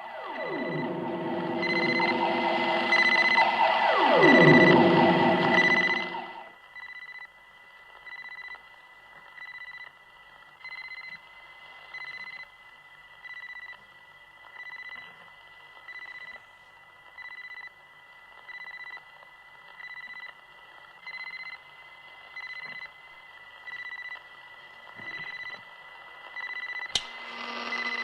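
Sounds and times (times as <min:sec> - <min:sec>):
high electronic beeps: 0:00.0 - 0:06.5
faint steady high tone: 0:00.0 - 0:07.1.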